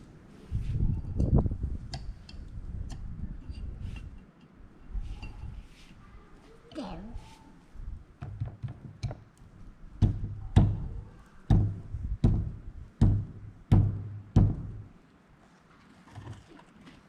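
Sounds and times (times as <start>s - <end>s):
hammer knocking on metal: 8.2s - 9.2s, 10.0s - 14.9s.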